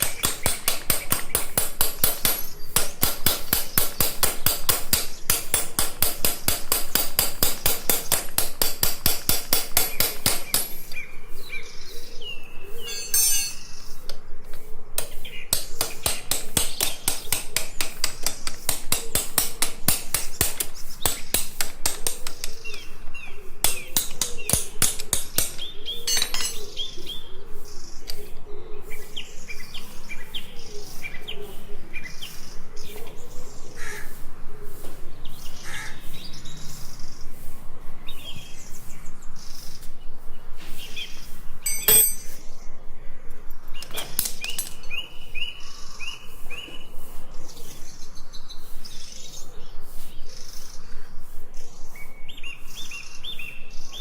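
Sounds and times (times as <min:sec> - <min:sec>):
birds chirping: 0:00.0 - 0:05.6, 0:09.7 - 0:54.0
hammer blows on metal: 0:41.6 - 0:42.5.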